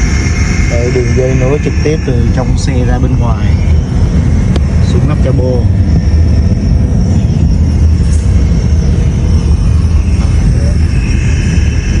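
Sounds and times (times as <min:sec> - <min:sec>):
dense low rumble: 0:00.0 - 0:12.0
faint high whine: 0:00.0 - 0:12.0.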